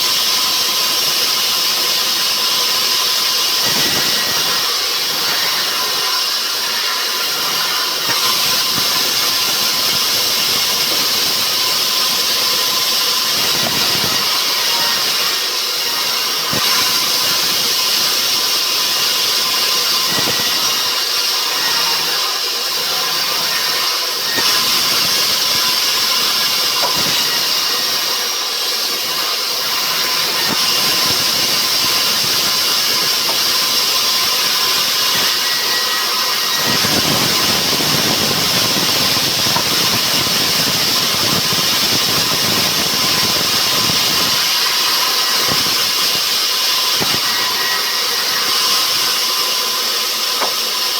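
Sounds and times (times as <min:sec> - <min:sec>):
sawmill saw running with high hiss: 0:00.0 - 0:50.9.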